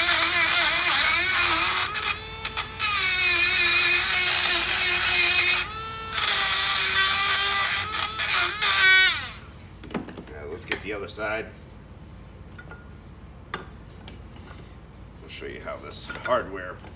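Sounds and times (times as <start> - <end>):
rotary tool grinding metal: 0.0 - 9.6.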